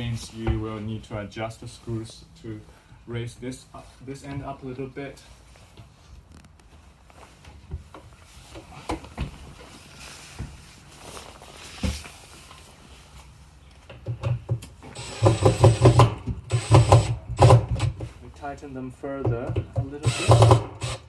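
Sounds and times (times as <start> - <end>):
power drill whirring: 14.8 - 18.0, 20.0 - 21.0.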